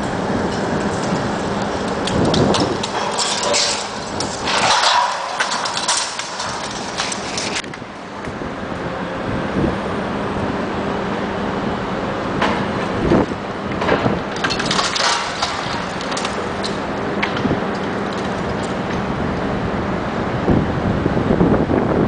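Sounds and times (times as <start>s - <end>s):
falling debris: 0.4s - 7.6s, 13.8s - 19.1s
bricks cracking and crashing down: 0.5s - 7.6s, 13.9s - 19.1s.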